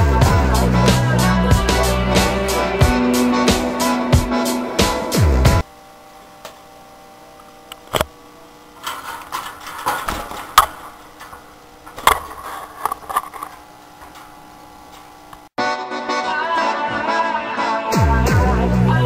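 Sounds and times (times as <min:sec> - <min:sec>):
music: 0:00.0 - 0:05.6, 0:15.6 - 0:19.0.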